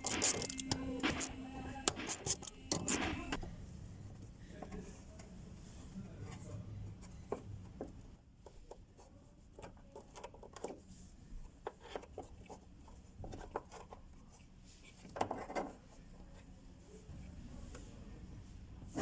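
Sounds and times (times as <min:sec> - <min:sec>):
hand tools clicking and tapping: 0:00.0 - 0:03.0.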